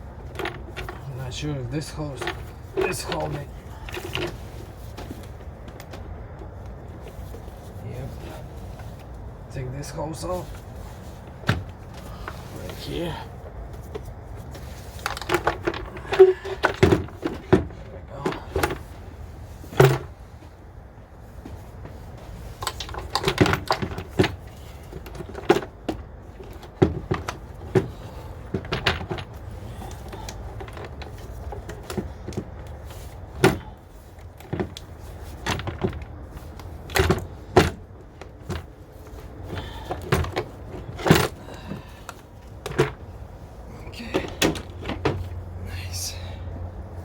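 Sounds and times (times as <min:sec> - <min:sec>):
steady low hum: 0:00.0 - 0:47.0
plastic engine parts clicking and rattling: 0:15.0 - 0:18.9, 0:22.6 - 0:43.1.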